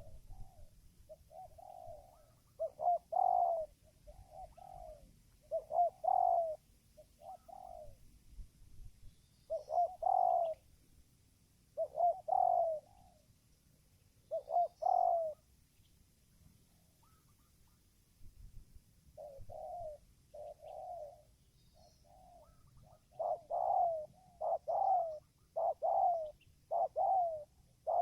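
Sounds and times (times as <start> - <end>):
dove cooing: 0.0 - 8.0, 9.5 - 10.6, 11.8 - 13.2, 14.2 - 15.5, 19.1 - 28.0.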